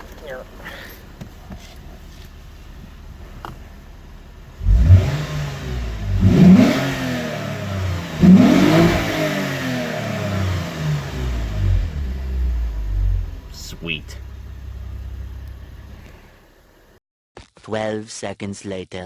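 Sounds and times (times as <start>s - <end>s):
car engine idling: 0.0s - 17.0s
car engine revving: 0.0s - 17.0s.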